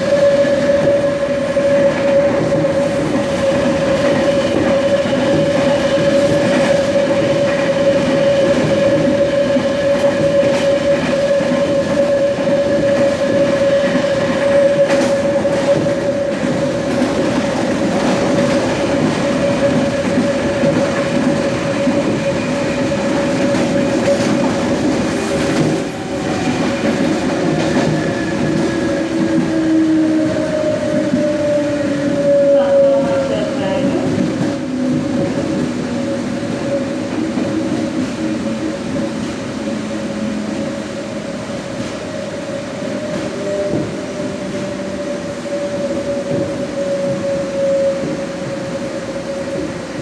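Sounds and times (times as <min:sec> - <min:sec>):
train traction motor whine: 0:39.5 - 0:50.0.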